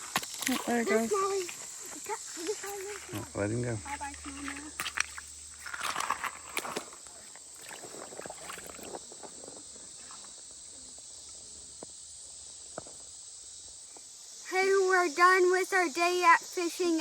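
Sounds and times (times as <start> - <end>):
scuffing and rustling: 0.0 - 9.4
insect drone: 0.0 - 17.0.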